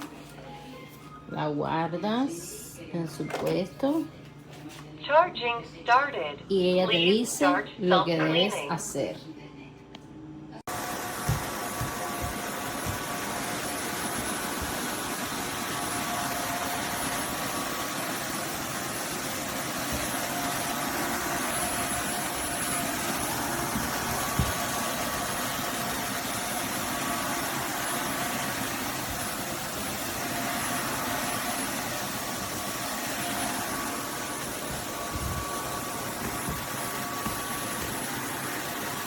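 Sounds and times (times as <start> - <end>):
vacuum motor and airflow rushing: 10.7 - 39.0.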